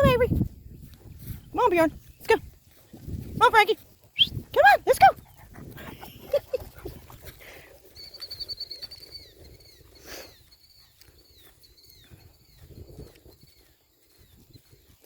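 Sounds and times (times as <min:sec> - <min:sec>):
small bird singing: 0:07.8 - 0:15.0.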